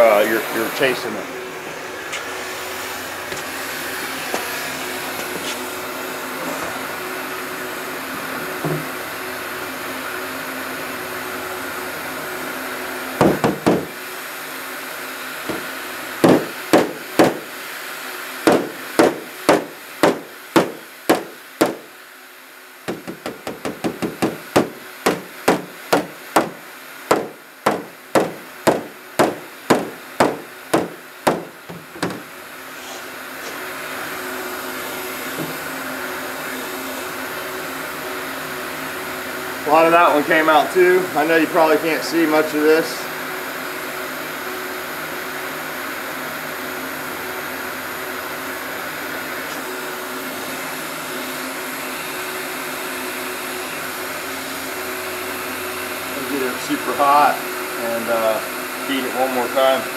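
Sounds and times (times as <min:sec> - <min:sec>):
heat gun blowing: 0:13.2 - 0:14.3, 0:15.1 - 0:22.0, 0:22.9 - 0:35.8
hammer tapping metal: 0:15.5 - 0:17.5, 0:18.5 - 0:21.9, 0:22.9 - 0:32.3.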